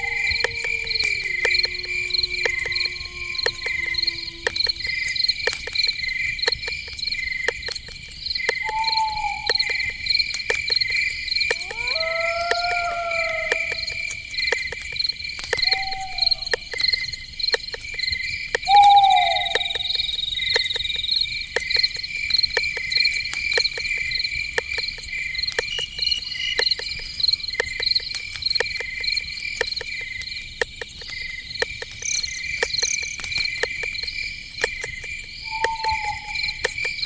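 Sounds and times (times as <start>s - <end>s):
falling animal call: 0.0s - 4.9s, 11.5s - 14.0s, 15.6s - 16.8s, 18.7s - 20.1s
crickets chirping: 0.0s - 37.0s
sharp clicks: 0.1s - 37.0s.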